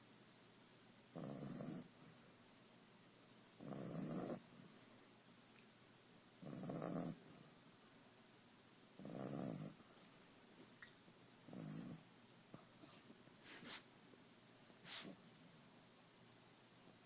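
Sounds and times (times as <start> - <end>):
pet snoring: 1.1 - 2.5, 3.6 - 5.1, 6.4 - 7.8, 9.0 - 10.4, 11.5 - 13.0
quiet breath: 1.9 - 2.8, 4.4 - 5.4, 9.7 - 11.2.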